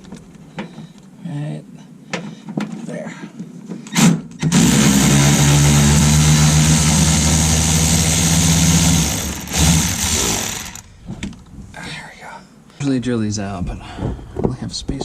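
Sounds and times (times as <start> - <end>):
power drill drilling plastic: 4.4 - 10.8.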